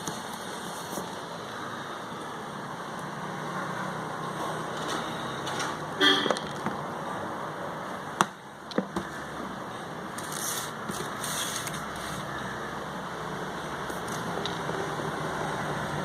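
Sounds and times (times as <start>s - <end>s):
background traffic noise: 0.0s - 16.0s
vehicle horn toot: 6.0s - 6.4s.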